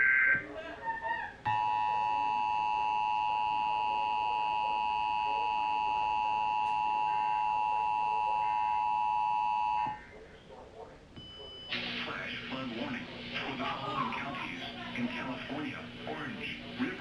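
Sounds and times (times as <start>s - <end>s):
two-tone alert alarm: 1.5s - 10.0s.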